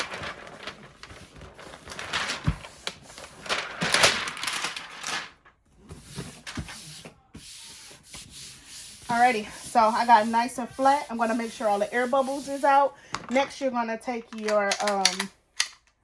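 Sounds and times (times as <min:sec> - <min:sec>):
rubbing paper onto plastic board: 0:06.0 - 0:12.8.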